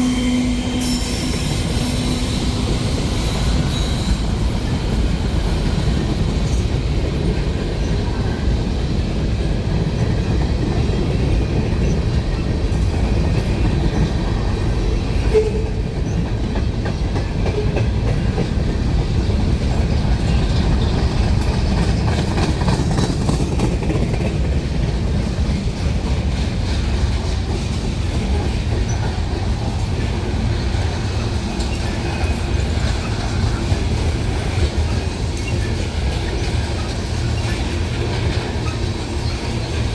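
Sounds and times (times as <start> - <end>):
freight train rumbling past: 0.0 - 39.9
wheels clacking over rail joints: 0.2 - 39.9.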